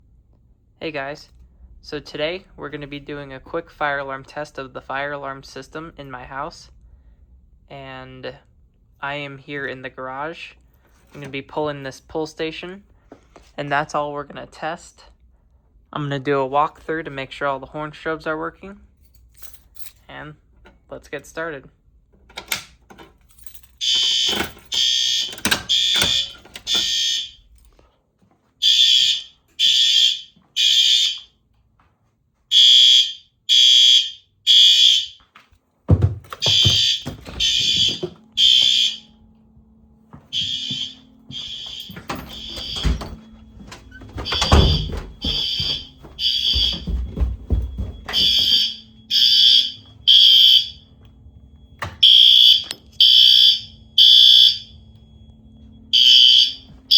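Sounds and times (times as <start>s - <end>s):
fire alarm horn blasts: 23.7s - 27.6s, 28.6s - 31.4s, 32.5s - 35.2s, 36.3s - 56.9s.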